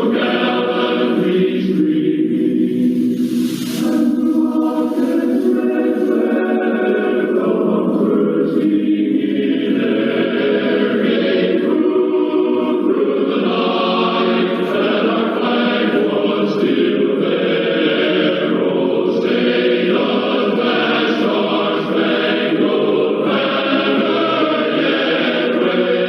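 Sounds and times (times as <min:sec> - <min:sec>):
choir singing anthem: 0:00.0 - 0:26.0.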